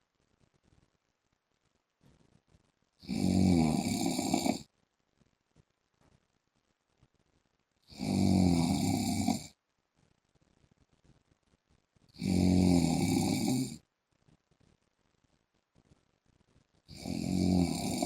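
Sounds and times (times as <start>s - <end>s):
man snoring loudly: 3.0s - 4.6s, 7.9s - 9.5s, 12.2s - 13.8s, 16.9s - 18.0s.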